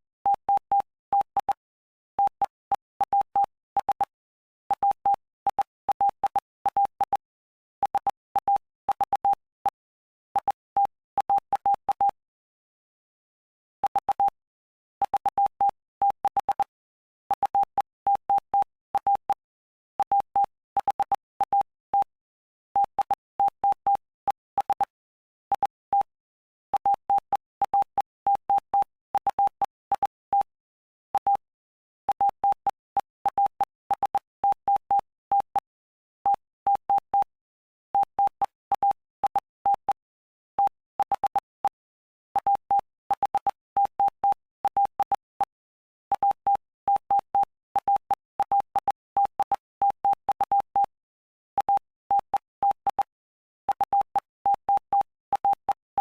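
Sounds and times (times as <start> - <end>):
morse code beeps: 7.8 - 9.8, 10.4 - 12.2, 13.9 - 14.4, 15.0 - 16.7, 17.3 - 19.4, 20.0 - 22.1, 26.7 - 30.5, 31.2 - 31.4, 32.1 - 35.7, 36.3 - 37.3, 42.4 - 50.9, 51.6 - 56.0.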